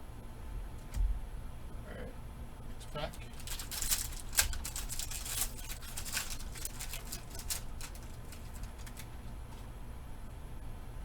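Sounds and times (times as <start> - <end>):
wrapper tearing and crinkling: 3.2 - 9.3.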